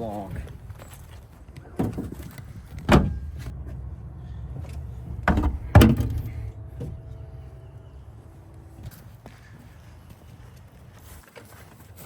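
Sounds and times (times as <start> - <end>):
low background rumble: 2.0 - 10.5.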